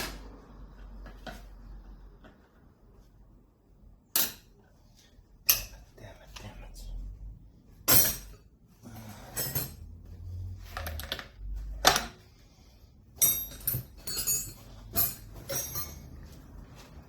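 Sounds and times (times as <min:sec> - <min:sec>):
metal tools clicking and scraping: 0:07.9 - 0:09.8, 0:13.2 - 0:16.3.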